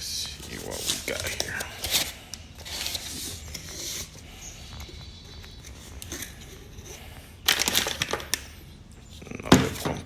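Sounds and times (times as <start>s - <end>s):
packaging rustling and scraping: 0.2s - 8.5s.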